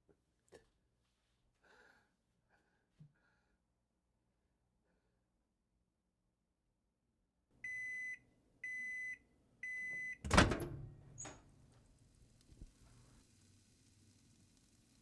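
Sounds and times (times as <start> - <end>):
microwave oven beeps: 7.6 - 11.4
microwave door clacking open: 10.2 - 11.4.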